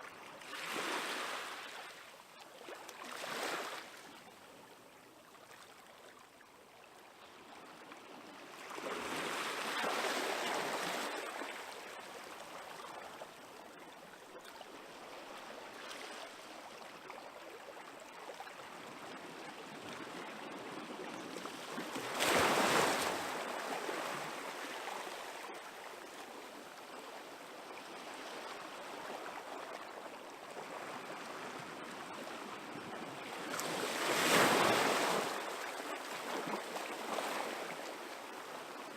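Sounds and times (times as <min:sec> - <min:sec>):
small waves washing ashore: 0:00.4 - 0:04.2, 0:17.8 - 0:38.9.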